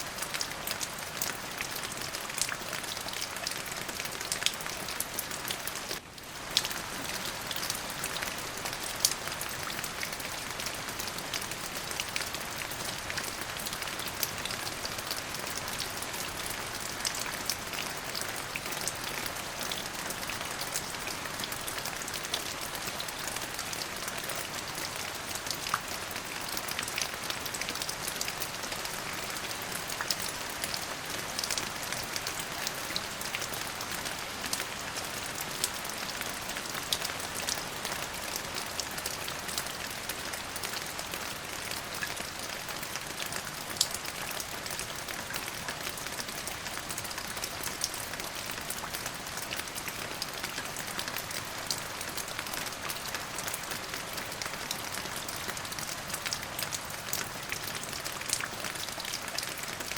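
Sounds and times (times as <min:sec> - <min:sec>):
steady rain: 0:00.0 - 0:59.9.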